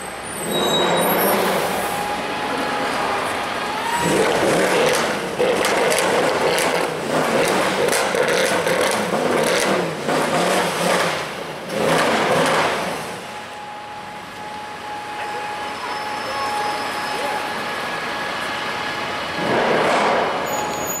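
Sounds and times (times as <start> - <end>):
car engine accelerating hard: 3.9 - 13.2.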